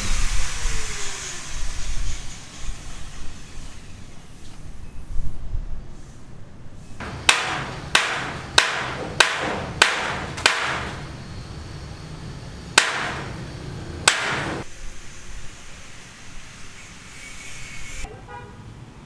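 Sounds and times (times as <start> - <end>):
hammer strikes ringing: 7.0 - 14.6.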